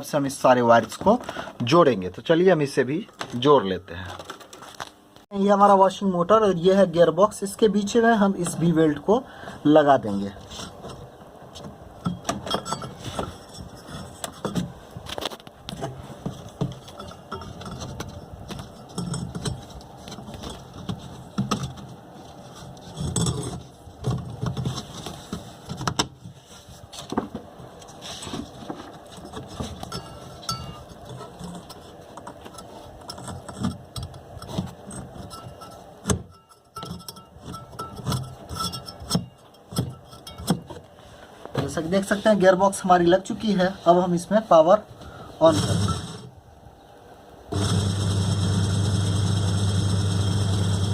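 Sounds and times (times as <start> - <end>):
clicks and clinks of metal parts: 12.0 - 14.6, 16.6 - 21.8, 29.1 - 40.8.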